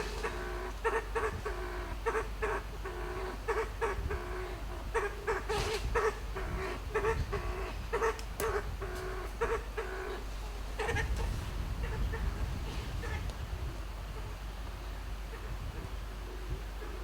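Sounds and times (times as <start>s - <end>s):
pheasant trilling calls: 0.0s - 11.2s.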